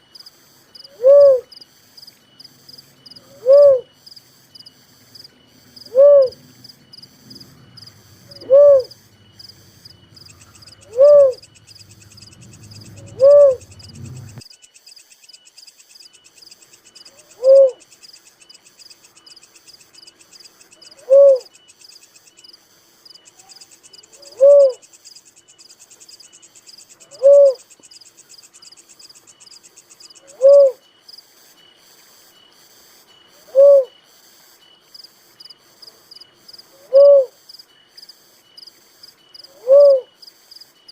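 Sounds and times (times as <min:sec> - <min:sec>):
insect trill: 0:00.0 - 0:40.9
dove hooting: 0:00.8 - 0:01.6, 0:03.1 - 0:04.0, 0:05.7 - 0:14.4, 0:17.1 - 0:17.9, 0:20.8 - 0:21.6, 0:23.4 - 0:24.9, 0:27.0 - 0:27.7, 0:30.2 - 0:30.8, 0:33.4 - 0:34.0, 0:36.7 - 0:37.4, 0:39.4 - 0:40.1
low rumble: 0:11.8 - 0:14.4.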